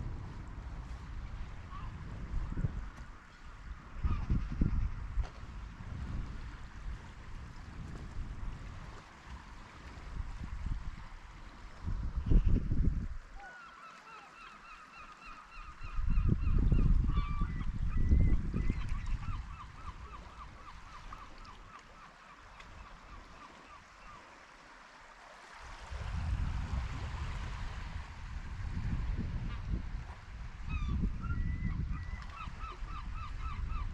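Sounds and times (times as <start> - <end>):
wind rumble on microphone: 0.0 - 13.5, 15.6 - 21.8, 25.6 - 33.9
gull calling: 13.4 - 24.2, 30.7 - 33.9.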